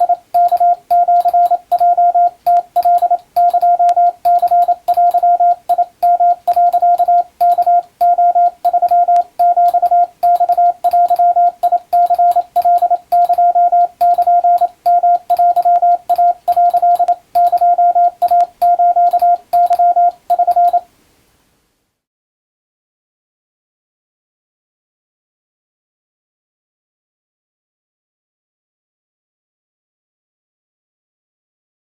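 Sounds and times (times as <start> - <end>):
morse code beeps: 0.0 - 20.9.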